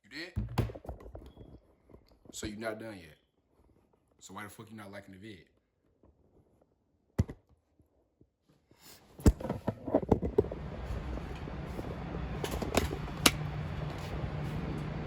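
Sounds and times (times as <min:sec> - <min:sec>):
low mechanical fan hum: 0:10.1 - 0:15.0.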